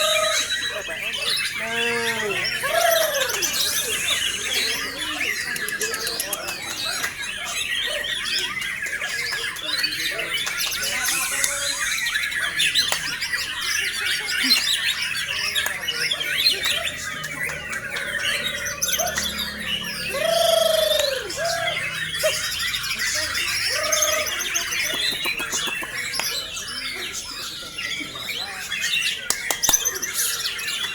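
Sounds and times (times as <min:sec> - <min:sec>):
songbird chirps and trills: 0:00.0 - 0:30.9
low whistled bird notes: 0:02.2 - 0:09.1, 0:10.2 - 0:25.2.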